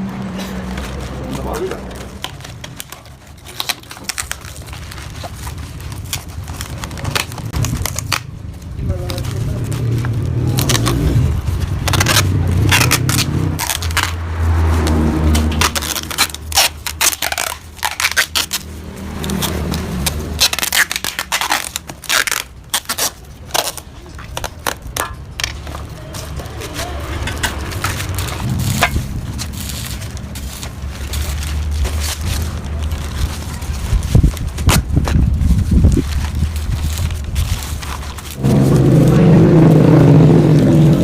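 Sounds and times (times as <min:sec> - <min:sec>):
metal scraping: 0:25.0 - 0:33.6, 0:37.4 - 0:41.0.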